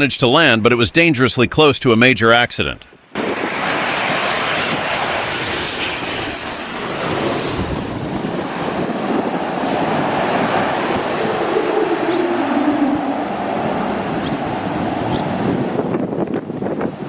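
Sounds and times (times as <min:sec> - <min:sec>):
aircraft engine and wind rush: 0:03.1 - 0:17.0
low drone: 0:03.2 - 0:15.8
high whine: 0:03.2 - 0:16.4.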